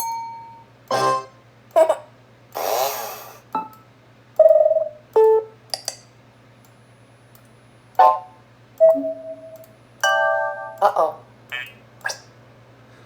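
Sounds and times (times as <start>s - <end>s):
computer alert sounds: 8.0s - 11.0s.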